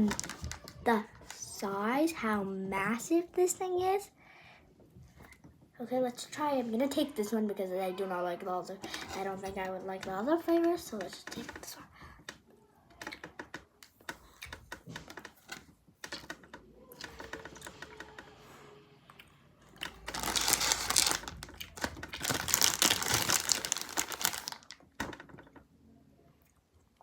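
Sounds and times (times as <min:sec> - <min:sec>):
plastic bag crinkling: 0:00.0 - 0:01.4, 0:19.8 - 0:24.9.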